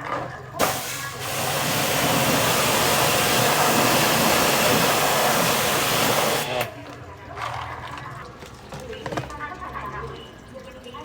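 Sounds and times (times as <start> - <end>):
high-pressure water spray hiss: 0.6 - 6.7.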